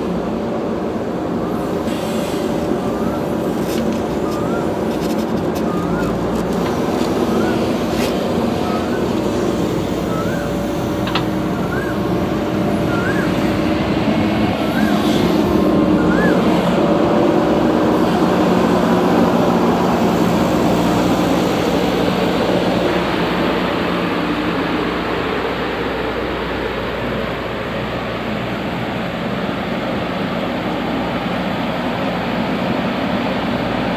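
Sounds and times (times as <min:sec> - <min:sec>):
heavy diesel engines humming: 0:00.0 - 0:33.9.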